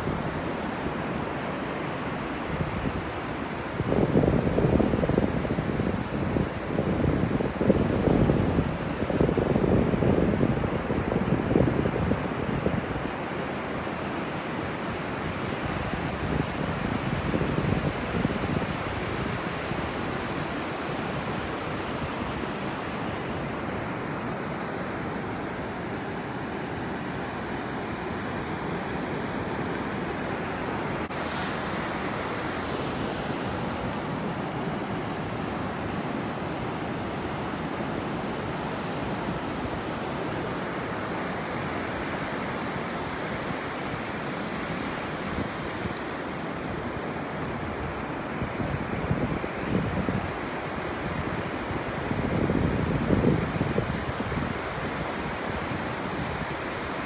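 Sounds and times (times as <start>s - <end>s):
waves breaking on beach: 0.0s - 57.0s.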